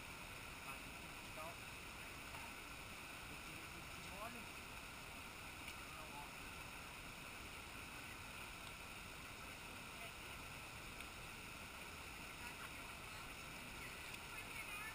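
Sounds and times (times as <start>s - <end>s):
faint steady noise: 0.0s - 14.9s.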